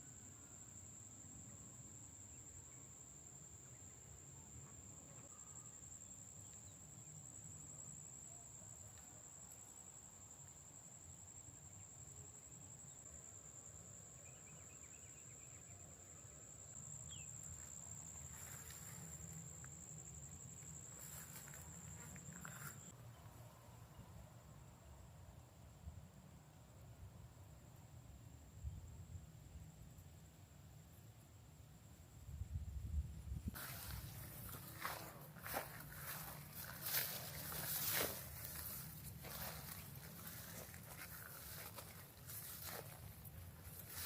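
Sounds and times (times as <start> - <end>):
high-pitched insect trill: 0.0 - 23.0, 32.2 - 44.0.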